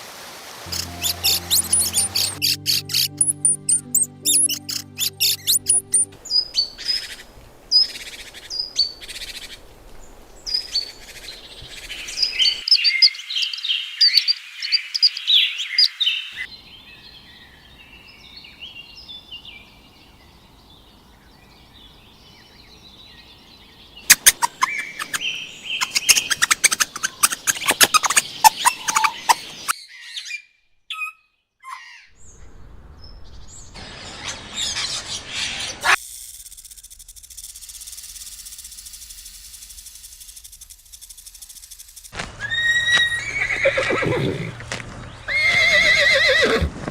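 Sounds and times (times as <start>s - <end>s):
small birds chirping: 0.7s - 36.0s.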